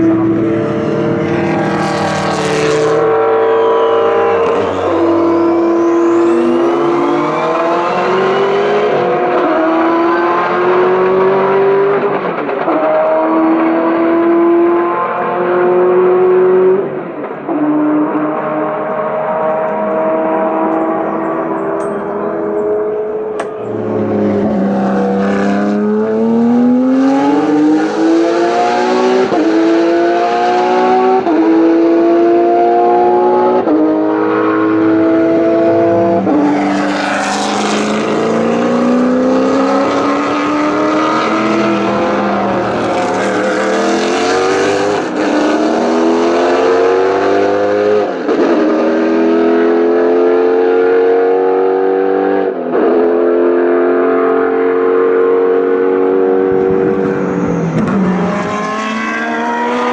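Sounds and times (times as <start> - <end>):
racing car engines accelerating: 0.0 - 59.9.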